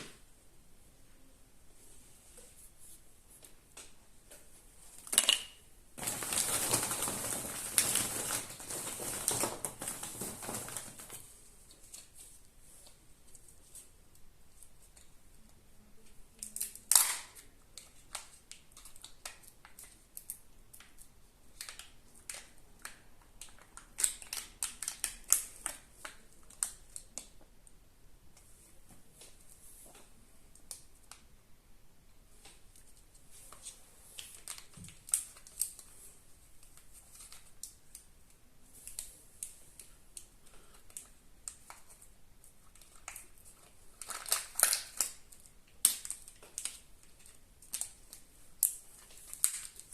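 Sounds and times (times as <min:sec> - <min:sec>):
foil wrappers crinkling: 0:06.0 - 0:12.2, 0:36.6 - 0:38.0, 0:42.6 - 0:49.9.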